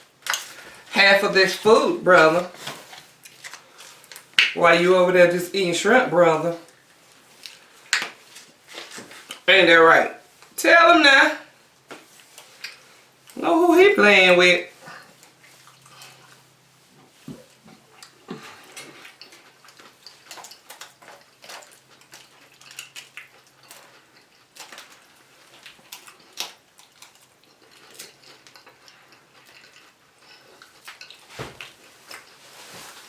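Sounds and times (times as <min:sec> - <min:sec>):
crunching and chewing: 0:00.0 - 0:00.9, 0:02.4 - 0:04.6, 0:06.6 - 0:09.5, 0:12.0 - 0:13.4, 0:14.8 - 0:33.0.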